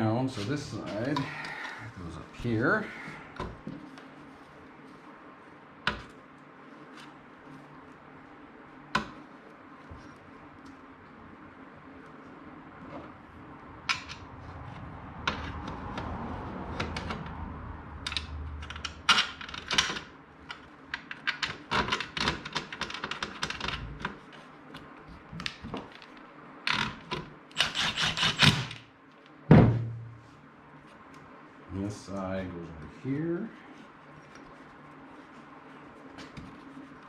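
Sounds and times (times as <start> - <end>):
heavy thud: 29.5 - 30.2.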